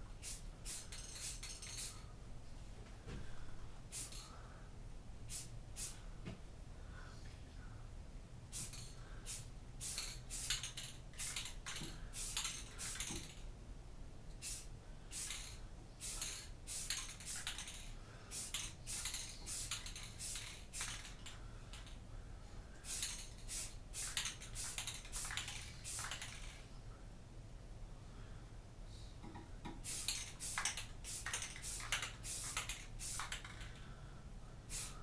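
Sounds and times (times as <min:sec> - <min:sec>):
spray paint can hissing: 0:00.2 - 0:02.0, 0:03.9 - 0:04.3, 0:05.3 - 0:06.0, 0:08.5 - 0:13.4, 0:14.4 - 0:21.3, 0:22.8 - 0:26.6, 0:29.8 - 0:33.7, 0:34.7 - 0:35.0.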